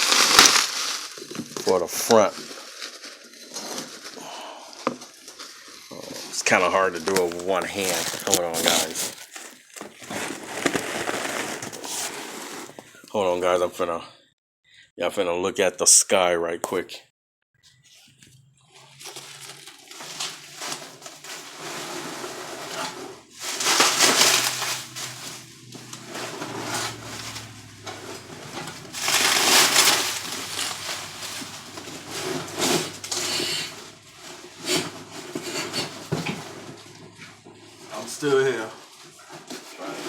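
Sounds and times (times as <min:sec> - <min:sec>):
metal scraping and clattering: 0:18.8 - 0:40.0.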